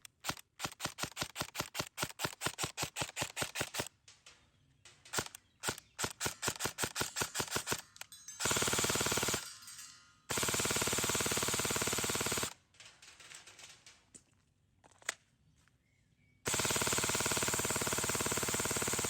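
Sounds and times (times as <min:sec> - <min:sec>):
airsoft gun firing: 0:00.2 - 0:03.9, 0:05.1 - 0:09.5, 0:10.3 - 0:12.6, 0:16.5 - 0:19.0.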